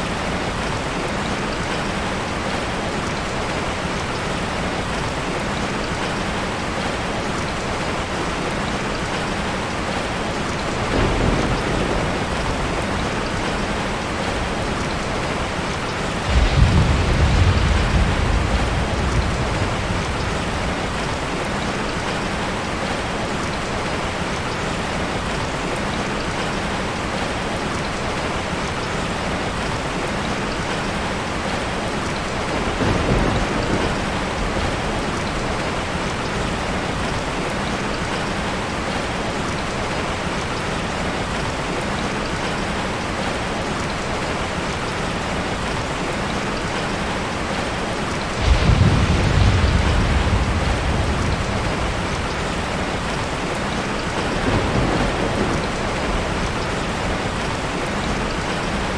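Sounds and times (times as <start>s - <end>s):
steady rain: 0.0s - 58.9s
thunder rumbling: 10.6s - 22.8s, 32.4s - 36.2s, 48.3s - 58.9s.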